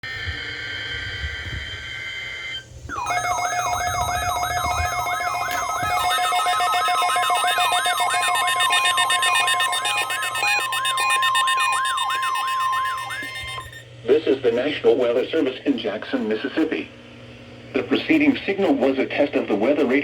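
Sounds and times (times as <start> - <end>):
falling siren sweep: 2.9 - 13.8
steady warning alarm tone: 2.9 - 16.9.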